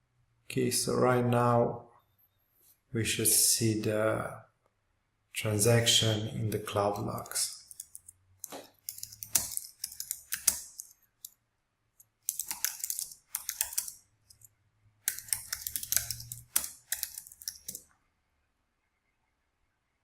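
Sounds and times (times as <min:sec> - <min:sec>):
typing on computer keyboard: 0:07.1 - 0:11.3, 0:12.2 - 0:17.8.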